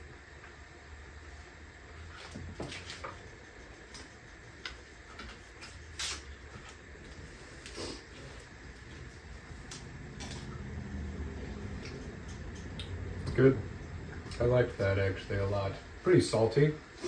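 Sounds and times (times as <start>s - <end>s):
steady low hum: 0.0s - 17.0s
people chewing: 2.2s - 13.4s.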